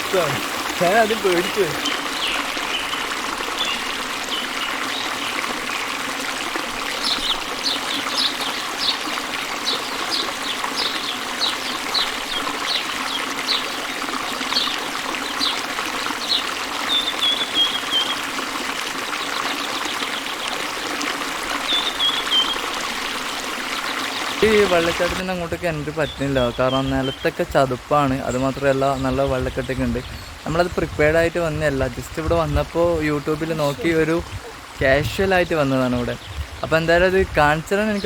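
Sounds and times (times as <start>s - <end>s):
stream water flowing: 0.0s - 38.0s
bird chirping: 21.7s - 22.7s, 23.9s - 38.0s.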